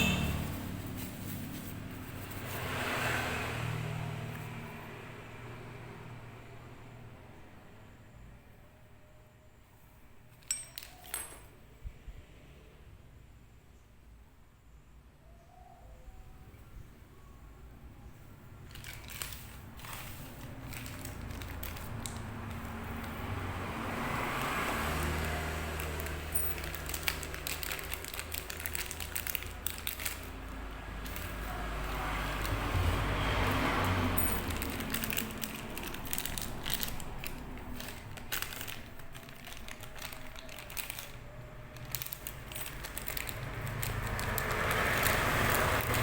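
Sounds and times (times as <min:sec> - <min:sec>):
packaging crinkling: 0:00.0 - 0:02.9, 0:18.6 - 0:46.0.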